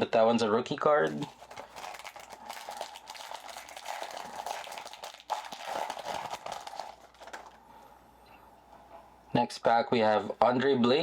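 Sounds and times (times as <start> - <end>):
foil wrapper crinkling: 1.0 - 7.6.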